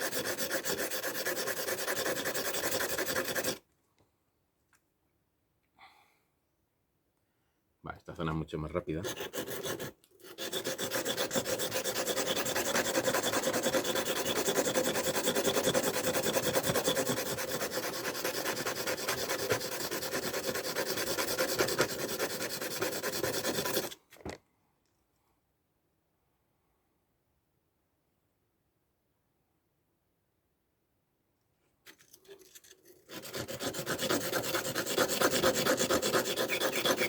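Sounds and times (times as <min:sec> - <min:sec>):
knife grinding on sharpening stone: 0:00.0 - 0:03.6, 0:09.0 - 0:24.0, 0:32.1 - 0:37.0.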